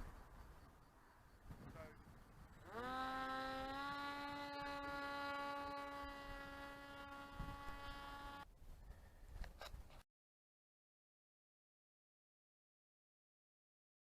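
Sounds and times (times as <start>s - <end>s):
electric motor whine: 2.6s - 8.5s.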